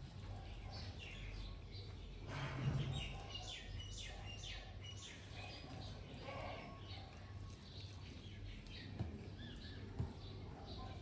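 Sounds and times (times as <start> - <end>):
songbird chirping: 6.8 - 11.0.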